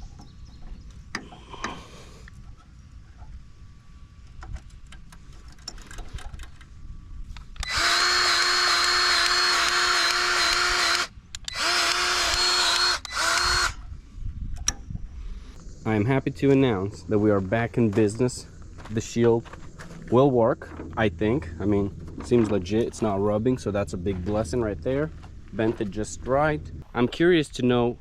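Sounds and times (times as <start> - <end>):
grease gun motor whining: 7.4 - 13.8.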